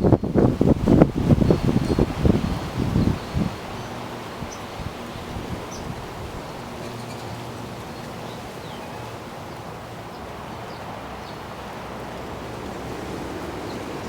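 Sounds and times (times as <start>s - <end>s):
wind gusting: 0.0s - 14.0s.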